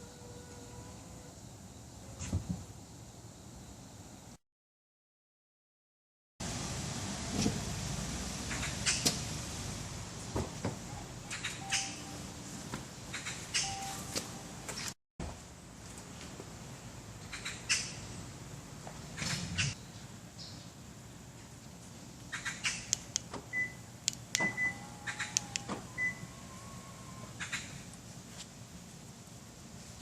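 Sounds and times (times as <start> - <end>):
short high beeps: 13.6 - 14.2
sharp clicks: 22.7 - 23.4, 24.0 - 24.4.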